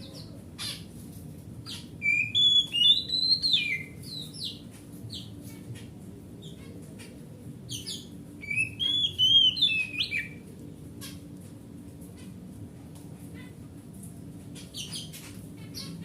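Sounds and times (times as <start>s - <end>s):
songbird chirping and whistling: 1.7s - 5.3s, 7.7s - 10.4s.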